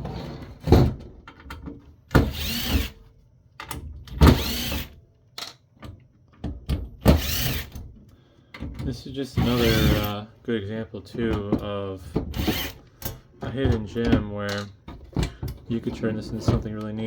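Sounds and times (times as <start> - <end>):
cordless drill motor whirring: 2.2 - 3.0, 4.3 - 5.0, 7.1 - 7.7, 9.4 - 10.1, 12.3 - 12.8
handling clicks and knocks: 11.2 - 17.0.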